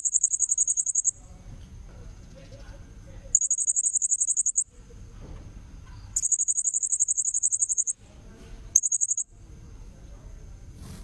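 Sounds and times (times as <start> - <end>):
faint insect-like whine: 0.0 - 11.0
parrot chattering trills: 3.4 - 4.6.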